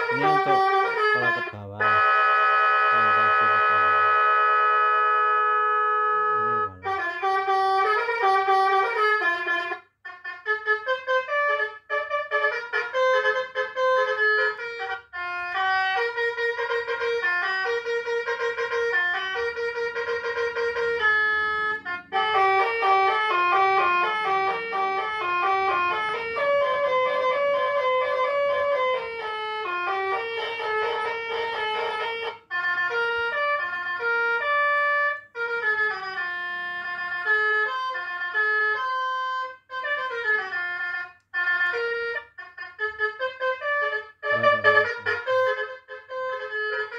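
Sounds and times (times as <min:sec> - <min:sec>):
electronic bus horn melody: 0:00.0 - 0:46.9
ship horn tone: 0:44.2 - 0:45.6.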